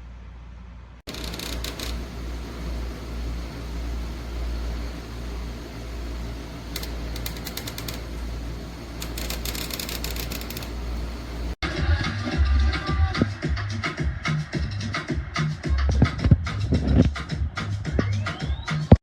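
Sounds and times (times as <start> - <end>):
electric fan running: 1.1 - 11.6
rapid clicking: 1.1 - 11.6.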